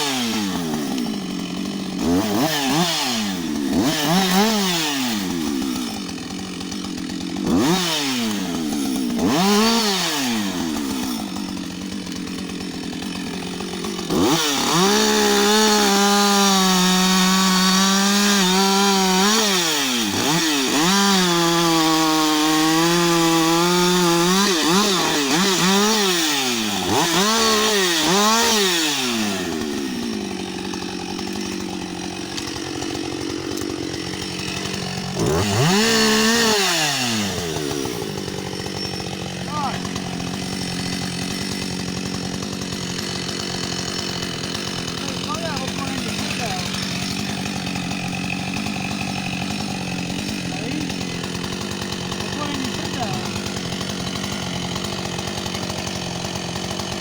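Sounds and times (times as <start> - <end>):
chainsaw revving and idling: 0.0 - 57.0.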